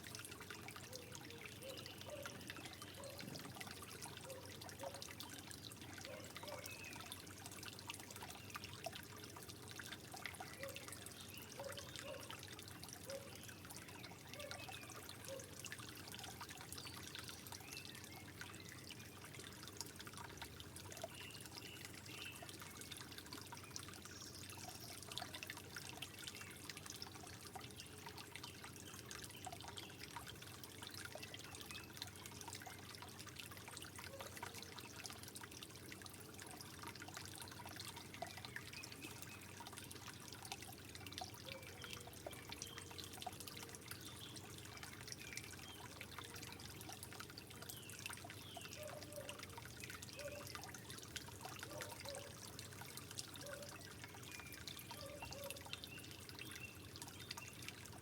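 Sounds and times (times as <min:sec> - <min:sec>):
water trickling and dripping: 0:00.0 - 0:58.0.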